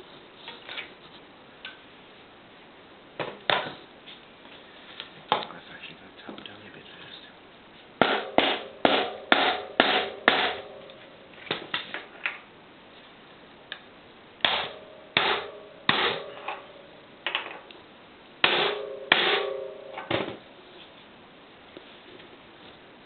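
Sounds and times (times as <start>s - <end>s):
hammer striking metal: 8.0s - 11.0s, 14.4s - 16.8s, 18.4s - 20.2s.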